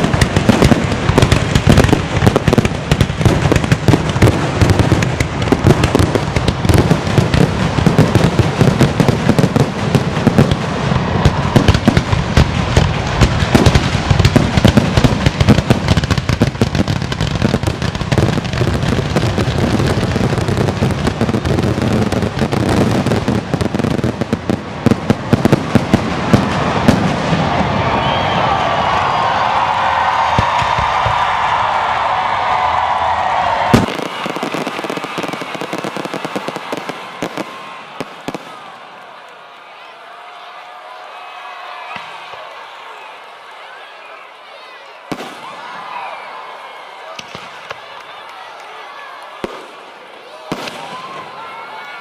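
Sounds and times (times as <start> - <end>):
aerial fireworks bangs: 0.0 - 28.6, 30.3 - 31.5, 33.7 - 38.7, 45.1 - 45.5, 50.5 - 51.2.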